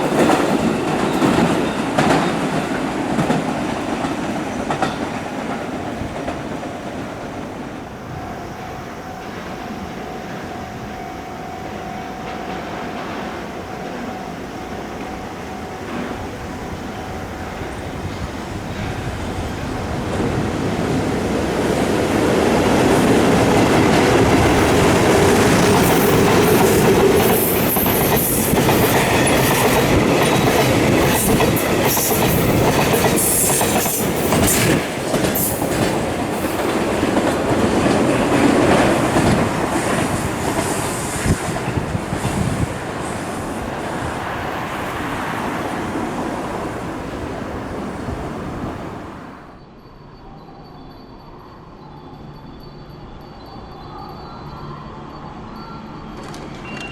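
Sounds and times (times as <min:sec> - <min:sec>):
train wheels clacking on rails: 0:00.0 - 0:49.5
high wheel squeal: 0:38.8 - 0:49.5.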